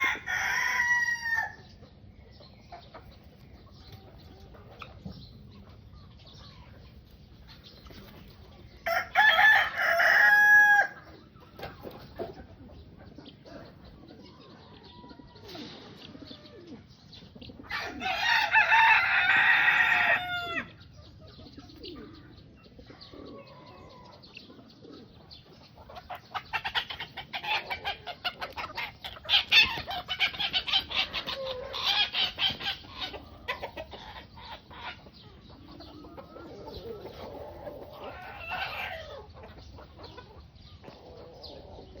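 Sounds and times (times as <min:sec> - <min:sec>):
rooster crowing: 0:00.0 - 0:01.6, 0:08.8 - 0:11.0
chickens clucking: 0:00.0 - 0:42.0.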